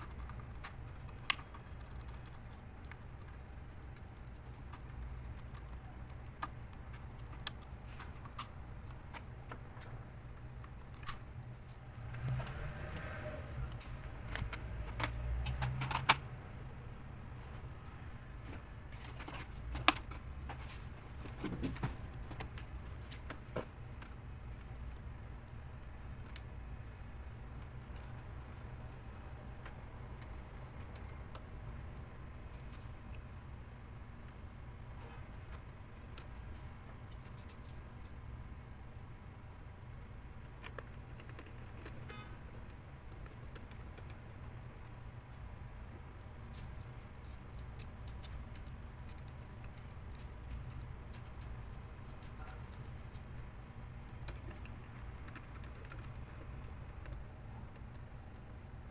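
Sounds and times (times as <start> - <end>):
small parts clicking and tapping: 0.0 - 16.2, 46.1 - 58.6
steady low hum: 0.0 - 58.9.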